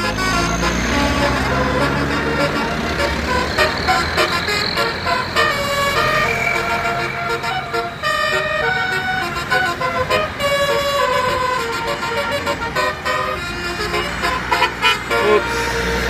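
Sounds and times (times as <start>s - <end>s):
multi-tone air horn melody: 0.0s - 16.0s.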